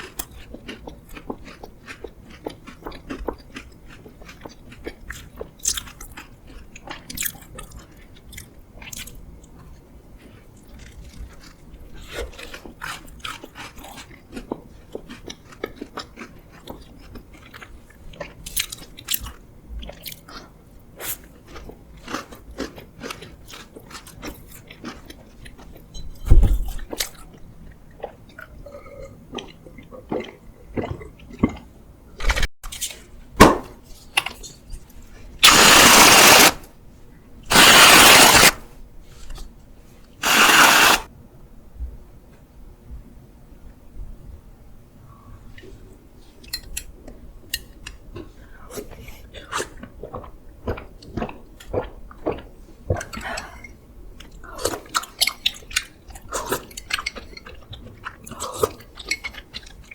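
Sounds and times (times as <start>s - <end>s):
crunchy chewing: 0.0s - 26.0s, 35.4s - 36.7s, 37.5s - 38.6s, 54.2s - 59.9s.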